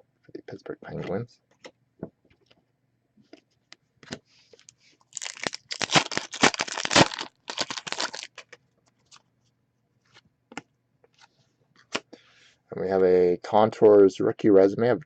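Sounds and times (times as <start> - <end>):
wrapper crinkling and tearing: 5.1 - 9.2.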